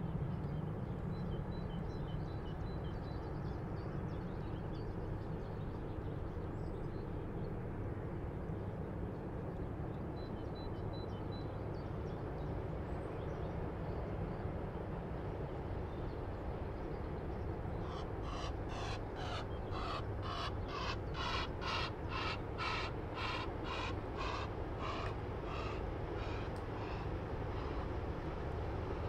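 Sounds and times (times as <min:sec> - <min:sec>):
water bird harsh calls: 0:17.9 - 0:27.1.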